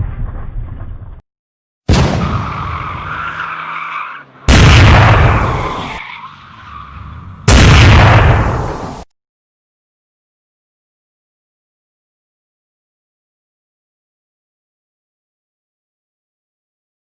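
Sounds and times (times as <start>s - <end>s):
race car sound effects: 2.2s - 7.5s.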